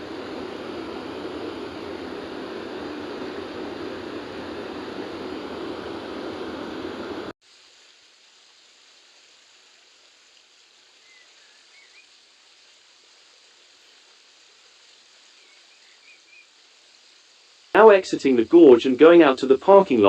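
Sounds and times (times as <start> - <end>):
rushing roar of water: 0.0 - 7.3
stream flowing: 0.0 - 15.5.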